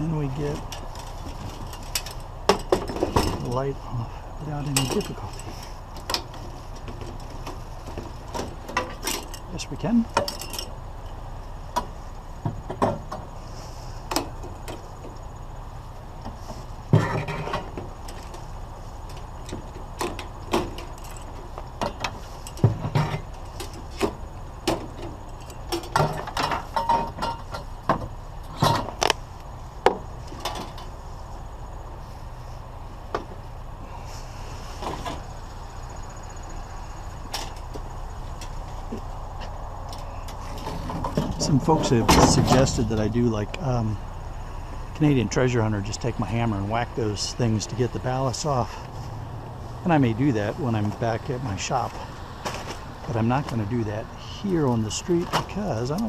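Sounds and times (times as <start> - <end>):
metal clanks and rattles: 0.0 - 3.8, 4.4 - 13.4, 16.2 - 31.1, 34.6 - 43.5.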